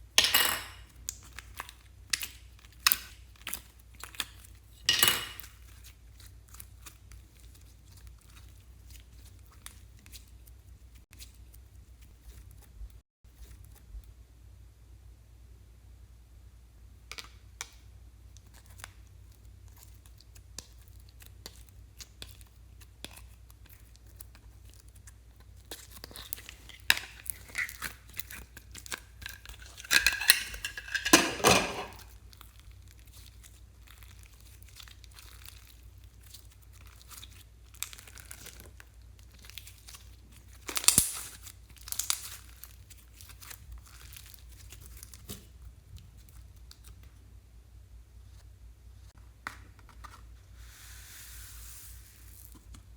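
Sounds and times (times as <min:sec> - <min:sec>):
crinkling and tearing: 0:31.8 - 0:47.1.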